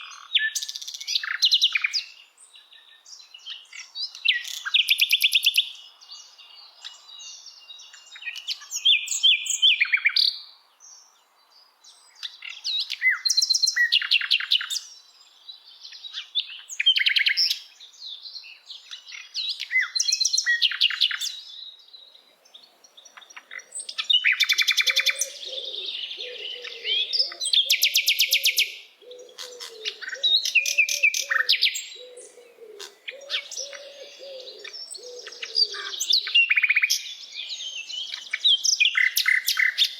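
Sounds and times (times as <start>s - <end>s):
songbirds singing and trilling: 0.0s - 39.9s
low cooing call: 24.6s - 36.2s.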